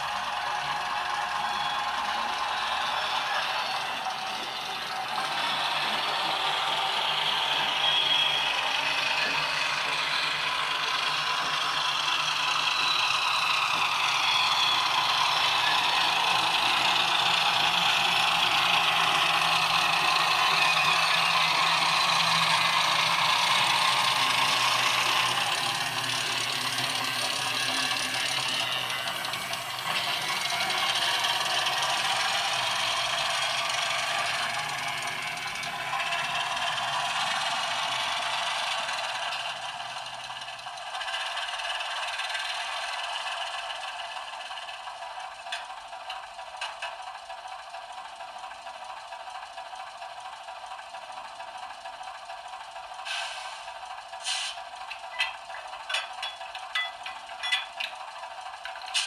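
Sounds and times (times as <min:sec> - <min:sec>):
model wheels rattling on track: 0:00.0 - 0:50.3, 0:51.0 - 0:59.0
small diesel engine sound from speaker: 0:00.0 - 0:59.0.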